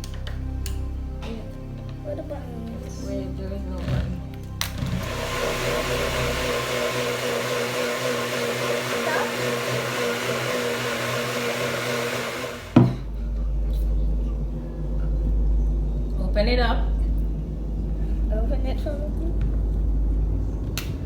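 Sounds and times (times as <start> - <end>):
blender motor whirring: 3.8 - 13.2
low rumble: 13.0 - 21.0.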